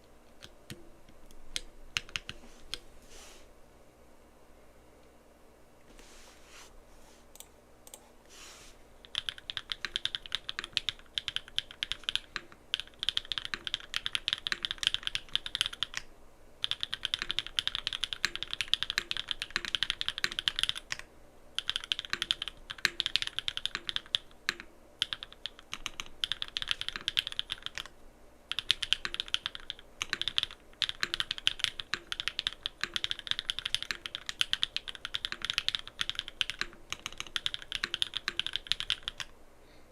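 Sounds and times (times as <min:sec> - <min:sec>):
typing on mechanical keyboard: 0:01.6 - 0:02.4, 0:09.0 - 0:27.9, 0:28.5 - 0:39.3.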